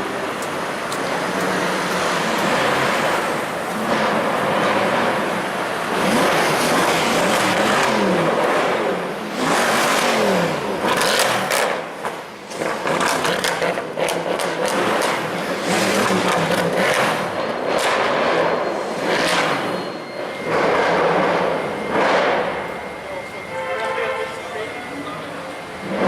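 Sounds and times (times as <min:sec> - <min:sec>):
engine revving hard: 0:05.9 - 0:11.8.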